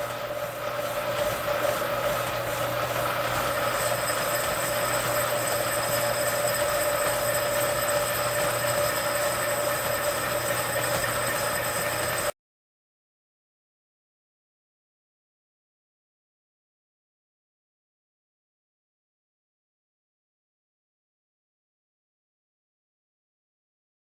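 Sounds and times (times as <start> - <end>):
metal lathe whine: 0.0 - 12.3.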